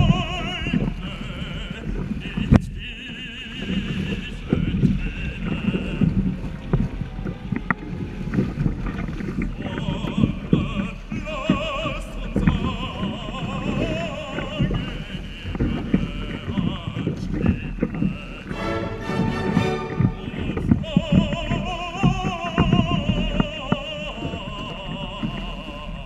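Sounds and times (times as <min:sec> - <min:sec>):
operatic singing with vibrato: 0:00.0 - 0:26.0
water rushing past boat: 0:00.0 - 0:26.0
gusty wind rumble: 0:03.4 - 0:15.6.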